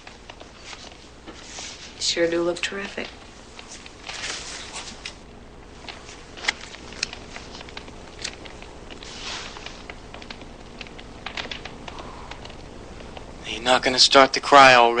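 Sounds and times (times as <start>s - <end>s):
soft rustling: 0.0s - 14.0s
steady hiss: 0.0s - 15.0s
small clicks and taps: 5.8s - 13.4s.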